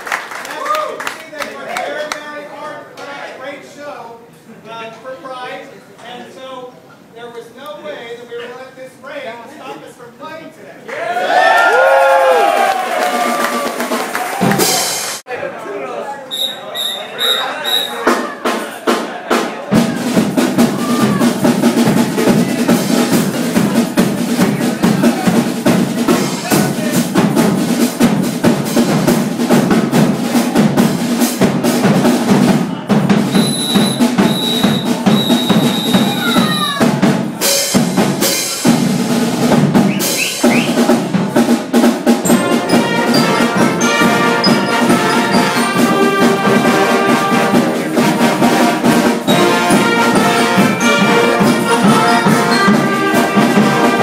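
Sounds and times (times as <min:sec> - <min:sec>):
marching snare and bass drums: 0:13.5 - 0:15.2, 0:16.3 - 0:54.0
brass instruments: 0:16.3 - 0:54.0.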